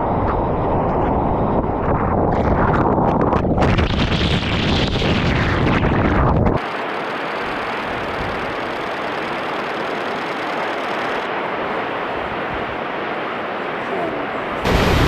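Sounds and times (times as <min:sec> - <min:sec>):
waterfall rushing: 0:12.8 - 0:15.0.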